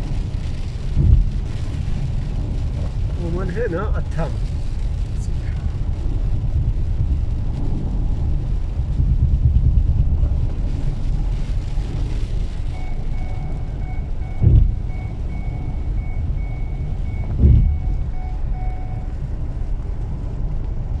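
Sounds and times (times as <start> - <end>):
vehicle rumbling: 0.0 - 21.0
dull thumps: 14.4 - 14.8.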